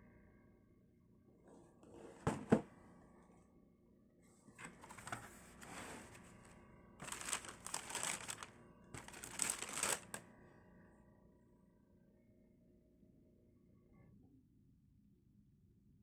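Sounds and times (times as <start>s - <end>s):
packaging rustling and crinkling: 4.6s - 6.2s, 7.0s - 10.2s.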